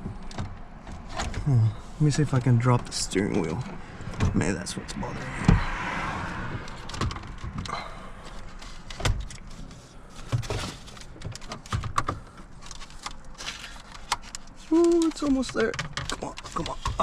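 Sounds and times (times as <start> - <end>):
rustling scrapes: 8.2 - 15.4.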